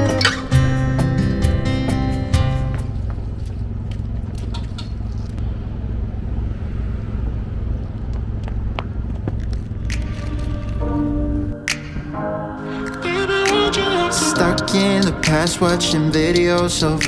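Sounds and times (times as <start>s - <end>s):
low rumble of road traffic: 0.6s - 11.7s.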